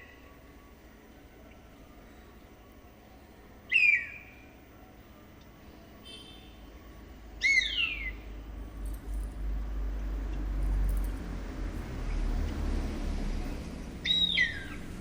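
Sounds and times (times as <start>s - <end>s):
faint high chirp: 3.7s - 4.5s.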